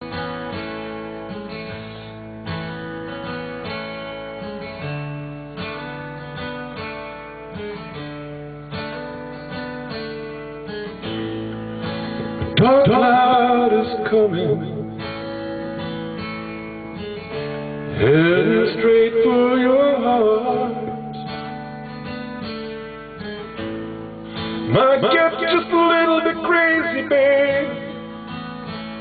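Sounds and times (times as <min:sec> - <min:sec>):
guitar playing slow chords: 0:00.0 - 0:29.0
person singing: 0:12.6 - 0:15.0, 0:17.9 - 0:21.8, 0:24.7 - 0:28.0.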